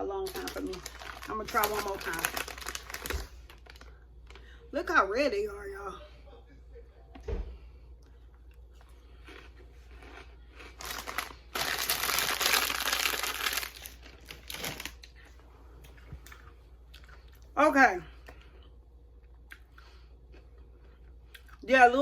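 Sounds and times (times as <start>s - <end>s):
chip bag crinkling: 0.0s - 4.6s, 9.2s - 15.3s.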